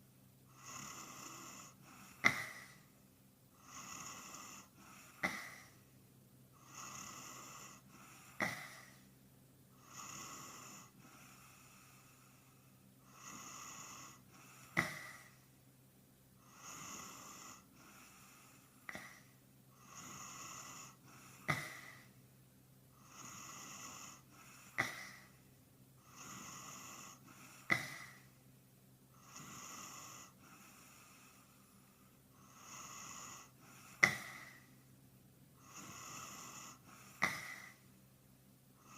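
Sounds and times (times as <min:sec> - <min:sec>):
faint steady hum: 0:00.0 - 0:38.9
man snoring: 0:00.5 - 0:02.8, 0:03.6 - 0:05.8, 0:06.6 - 0:09.0, 0:09.8 - 0:15.4, 0:16.4 - 0:22.1, 0:23.0 - 0:25.4, 0:26.0 - 0:28.3, 0:29.2 - 0:31.6, 0:32.4 - 0:34.7, 0:35.6 - 0:37.8.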